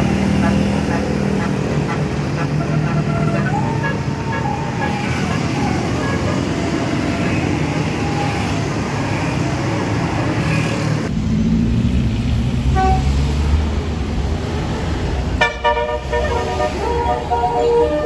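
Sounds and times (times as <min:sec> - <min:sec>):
bus diesel engine running: 0:00.0 - 0:18.0
deep engine rumble: 0:11.1 - 0:18.0.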